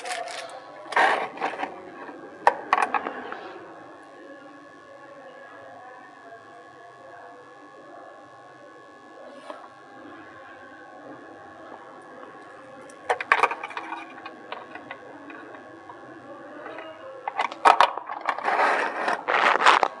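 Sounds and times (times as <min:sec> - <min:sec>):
rustling and scraping: 0:00.0 - 0:01.8, 0:17.3 - 0:20.0.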